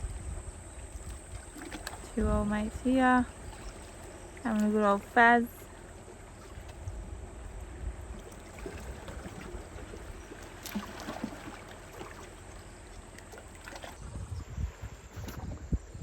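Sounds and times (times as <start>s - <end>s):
wind rumble on microphone: 0.0s - 5.4s, 6.0s - 10.4s, 13.5s - 16.0s
small waves lapping on rocks: 0.0s - 15.8s.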